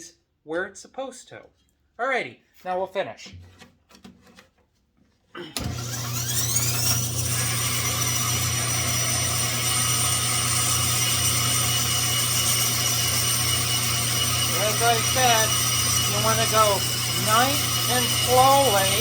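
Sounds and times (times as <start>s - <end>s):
bandsaw motor whining and humming: 5.6s - 19.0s.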